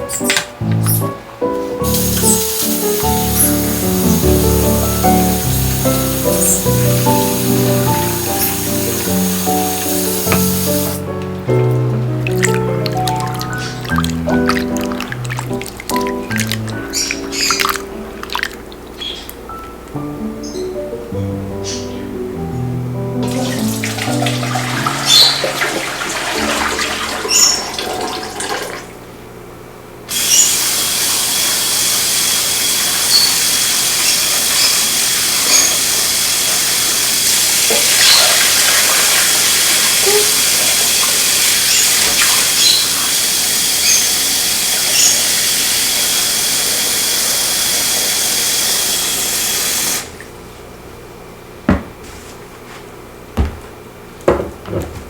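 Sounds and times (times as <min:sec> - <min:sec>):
water running from tap: 0:01.8 - 0:18.8, 0:23.2 - 0:28.9, 0:30.1 - 0:50.4
knocks: 0:51.7 - 0:52.0, 0:53.4 - 0:55.0.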